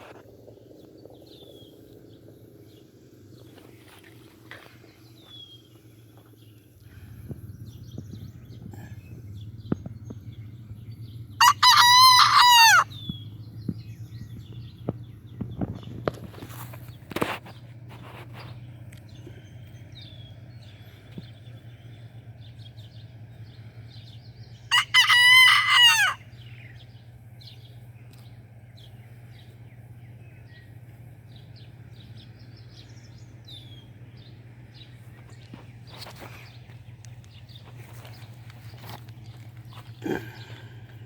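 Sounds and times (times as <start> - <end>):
steady low hum: 0.0 - 41.0
rooster crowing: 11.4 - 12.9, 24.7 - 26.2.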